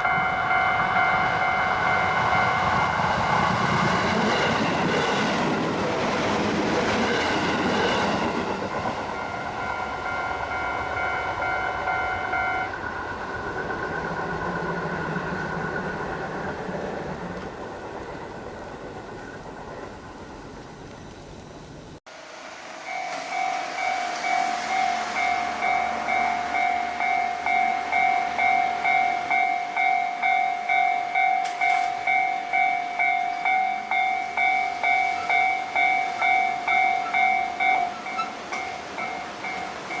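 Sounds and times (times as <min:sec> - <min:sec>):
level crossing bell ringing: 0:00.0 - 0:02.8, 0:09.1 - 0:12.7, 0:22.9 - 0:40.0
train wheel and rail noise: 0:00.0 - 0:40.0.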